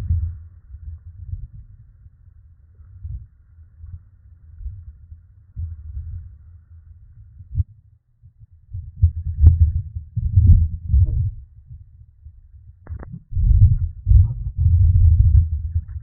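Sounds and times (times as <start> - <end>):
storm wind gusting on microphone: 0.0 - 1.9, 12.9 - 16.0.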